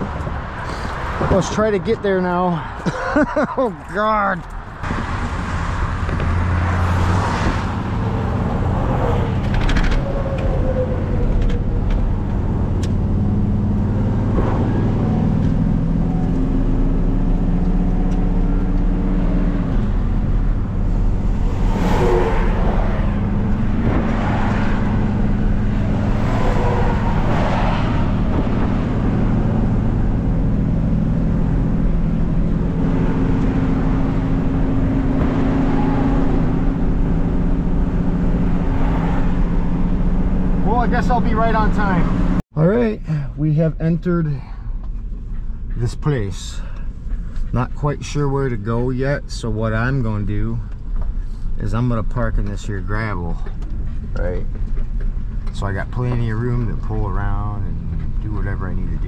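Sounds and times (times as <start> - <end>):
road rumble: 0.0 - 59.0
vehicle engine running: 7.8 - 42.4.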